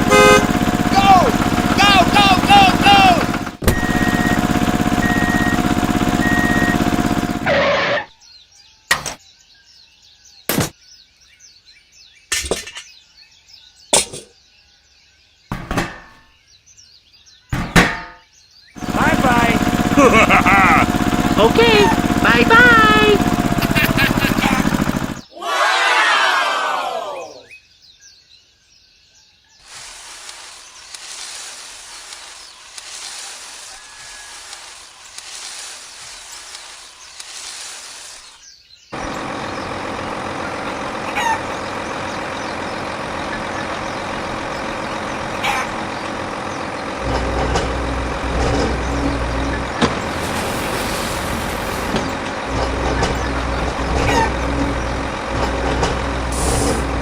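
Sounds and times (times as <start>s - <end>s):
vehicle engine running: 0.0s - 7.9s, 18.8s - 25.3s, 39.0s - 57.0s.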